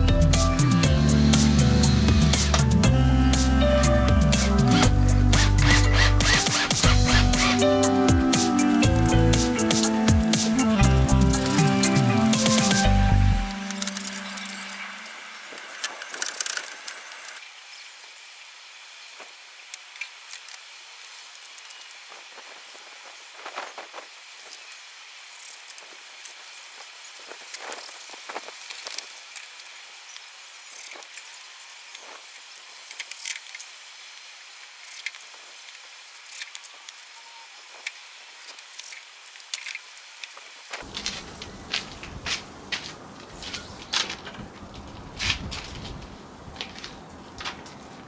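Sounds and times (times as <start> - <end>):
steady background hiss: 6.0 - 43.8.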